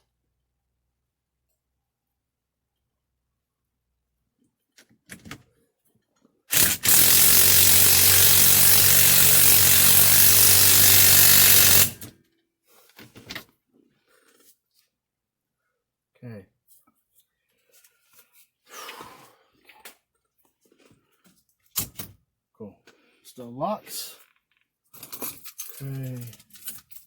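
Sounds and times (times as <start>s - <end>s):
power tool driving bolt: 6.5s - 12.1s.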